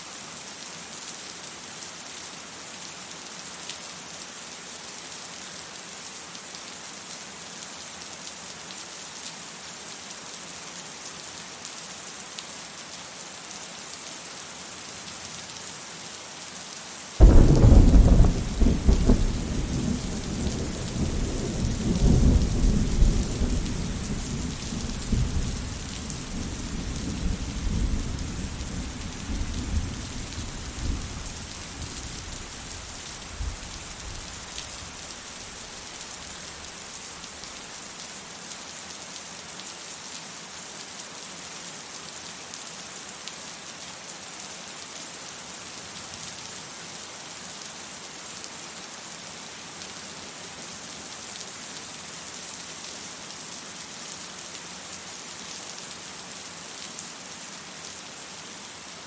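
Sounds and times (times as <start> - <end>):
steady rain: 0.0 - 59.0
thunder rumbling: 17.2 - 33.6.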